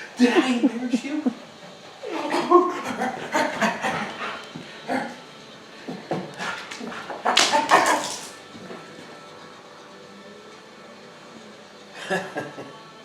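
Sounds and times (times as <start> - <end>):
dog barking yipping and whining: 7.2 - 8.3.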